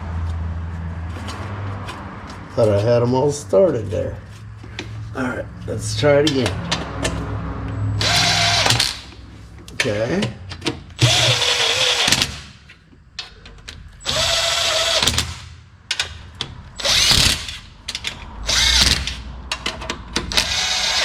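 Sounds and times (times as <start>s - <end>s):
cordless power tool bursts: 11.0s - 12.5s, 14.0s - 15.4s, 20.3s - 21.0s
bolts and socket clicking: 15.0s - 21.0s.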